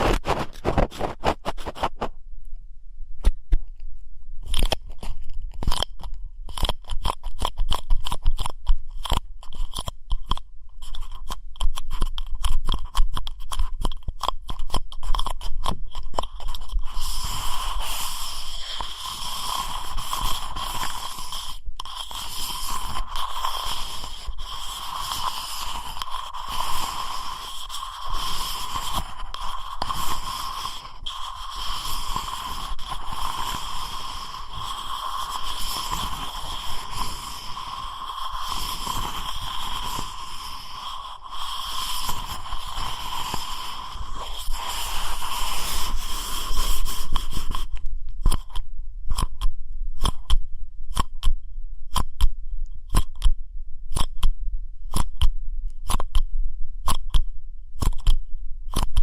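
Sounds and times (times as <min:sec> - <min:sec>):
ear pick scratching microphone: 0:00.0 - 0:02.2, 0:04.4 - 0:59.0
crisp clicks: 0:03.2 - 0:18.0, 0:46.6 - 0:59.0.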